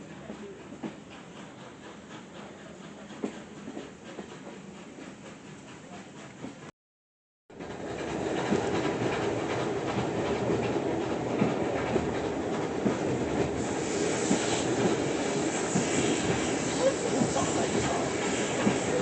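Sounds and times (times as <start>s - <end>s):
train rumbling along track: 0.0s - 6.7s, 7.5s - 19.0s
wheels clacking over rail joints: 7.6s - 13.6s.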